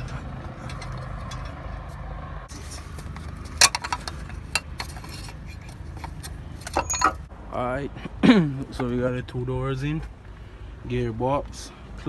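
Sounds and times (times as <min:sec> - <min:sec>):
metallic clinks of car parts: 0:00.0 - 0:01.8, 0:02.5 - 0:07.3.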